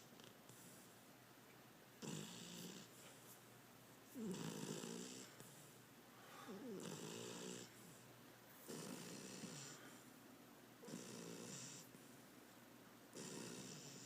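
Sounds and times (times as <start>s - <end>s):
dog snoring: 2.0s - 3.1s, 4.2s - 5.8s, 6.4s - 8.0s, 8.6s - 10.0s, 10.8s - 12.0s, 13.1s - 14.0s.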